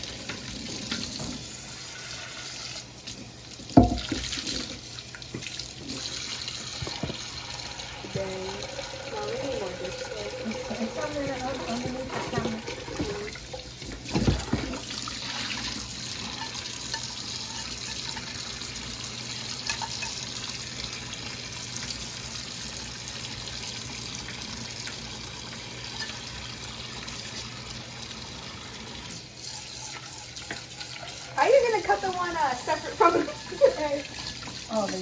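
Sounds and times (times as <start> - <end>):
pot being washed: 0.0 - 35.0
tap running into sink: 3.7 - 4.7, 6.6 - 15.0.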